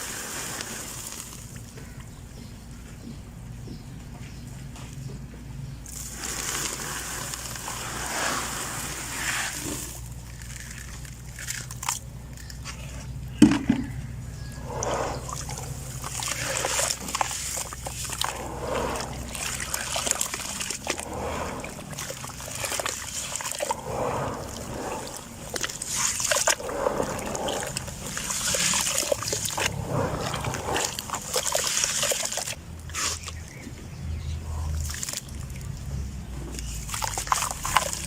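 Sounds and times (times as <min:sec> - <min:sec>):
water splashing: 0:14.4 - 0:33.3, 0:36.6 - 0:38.0
dirt crumbling into water: 0:14.6 - 0:33.4, 0:36.5 - 0:38.0.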